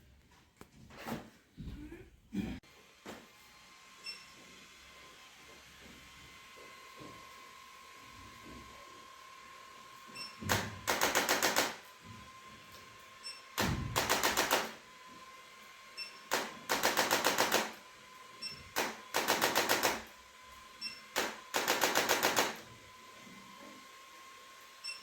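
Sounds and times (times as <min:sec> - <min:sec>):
rapid mechanical taps: 0:21.2 - 0:22.6.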